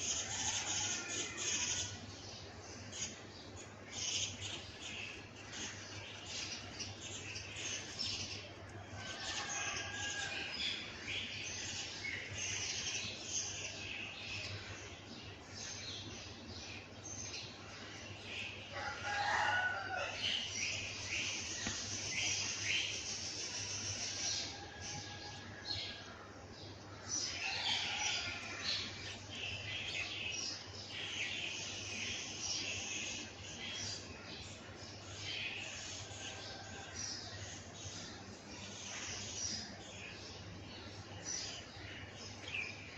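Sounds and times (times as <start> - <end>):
small birds chirping: 0.0 - 42.9
rooster crowing: 0.1 - 2.0, 9.0 - 10.7, 18.7 - 20.4, 24.3 - 26.1, 27.4 - 29.0.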